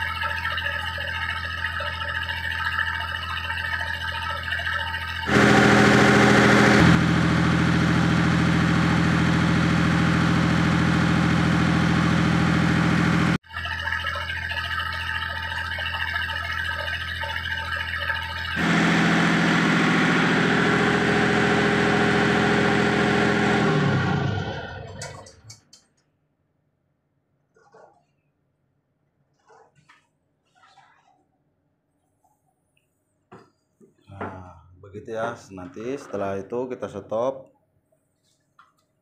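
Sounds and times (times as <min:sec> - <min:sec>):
marine diesel engine running: 0:00.0 - 0:13.4, 0:14.2 - 0:25.5.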